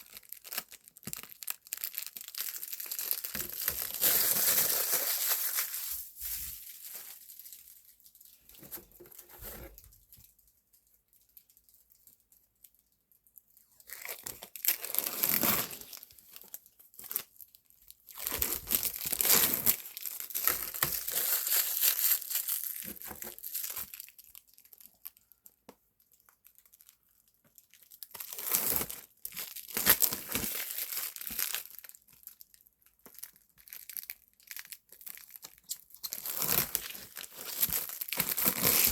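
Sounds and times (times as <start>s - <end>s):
plastic film being peeled off: 13.9s - 16.0s, 35.6s - 38.9s.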